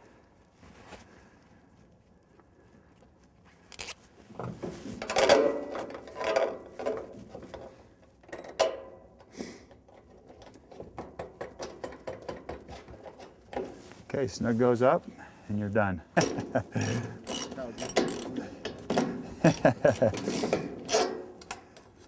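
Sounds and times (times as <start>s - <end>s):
small metal clicks: 3.7s - 4.0s, 16.2s - 22.0s
metal scrapes and knocks: 16.2s - 21.4s.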